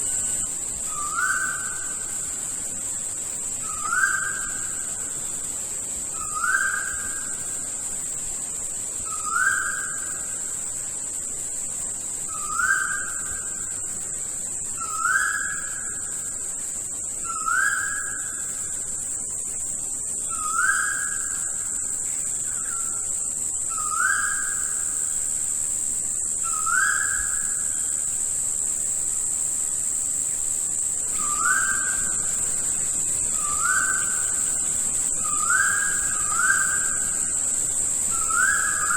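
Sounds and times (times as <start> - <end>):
high-pitched insect drone: 0.0 - 38.9
bird whistled call: 3.6 - 4.8, 17.2 - 18.4, 26.4 - 27.9, 31.2 - 32.4, 33.3 - 34.5, 35.2 - 37.3, 38.1 - 38.9.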